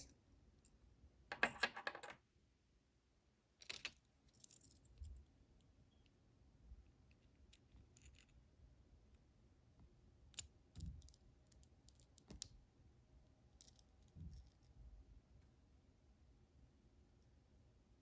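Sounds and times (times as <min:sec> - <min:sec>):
small metal lock parts clicking: 0:07.1 - 0:08.4, 0:10.3 - 0:12.5, 0:13.6 - 0:14.7.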